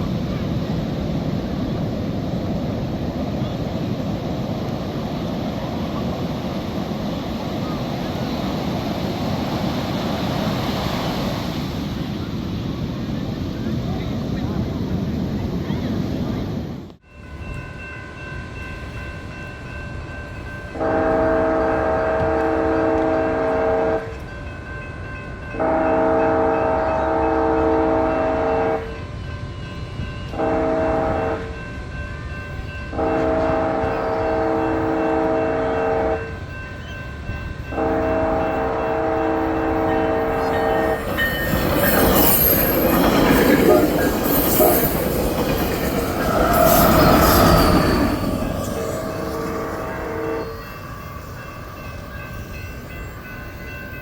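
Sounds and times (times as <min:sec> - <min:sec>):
train rushing past: 0:00.0 - 0:54.0
train chime horn blasts: 0:20.2 - 0:54.0
steel wheels squealing on rails: 0:31.1 - 0:54.0.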